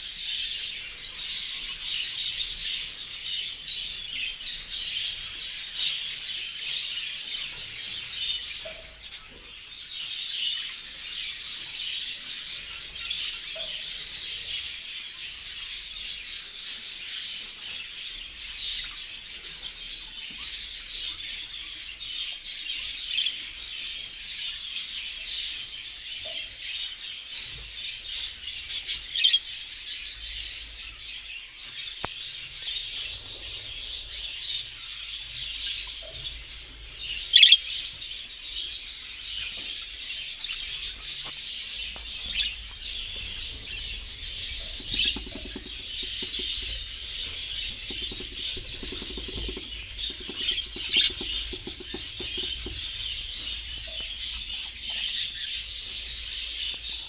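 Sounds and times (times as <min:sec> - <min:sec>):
budgerigars chattering: 0:32.6 - 0:37.8, 0:39.3 - 0:55.6.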